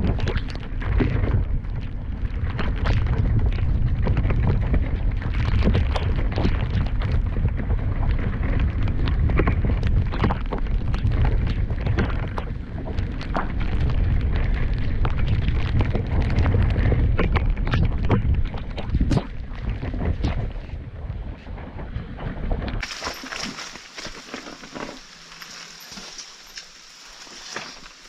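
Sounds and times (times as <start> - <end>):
mud and water splashing: 0.0 - 20.6, 22.8 - 28.0
bike clicks and rattles: 0.0 - 20.8
wind buffeting on microphone: 0.0 - 28.0.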